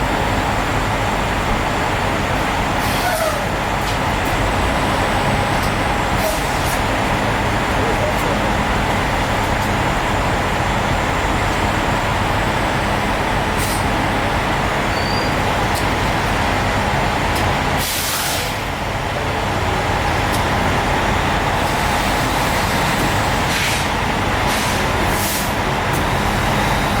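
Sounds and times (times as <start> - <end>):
diesel engine idling: 0.0 - 27.0
air hiss: 17.8 - 18.6.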